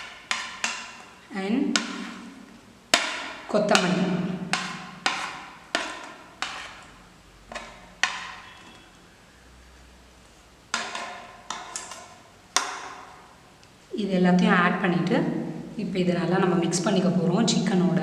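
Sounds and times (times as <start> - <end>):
utensil knocking on mixing bowl: 0.0 - 8.9, 10.7 - 13.4.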